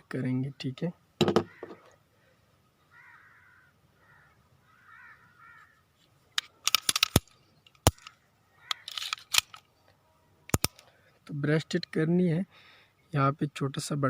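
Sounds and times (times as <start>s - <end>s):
crows cawing: 1.2s - 5.8s, 8.0s - 9.0s
pistol metallic clicks and clacks: 6.4s - 9.7s, 10.5s - 10.9s.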